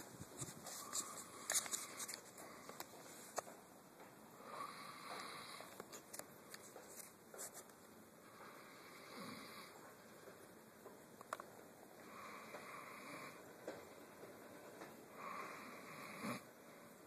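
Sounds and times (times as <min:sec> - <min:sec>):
man snoring faintly: 0:04.4 - 0:05.8, 0:08.2 - 0:09.8, 0:12.0 - 0:13.5, 0:15.1 - 0:17.0.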